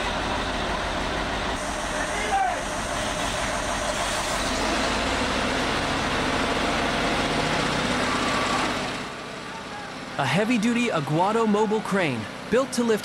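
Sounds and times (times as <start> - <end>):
heavy truck engine running: 0.0 - 13.0.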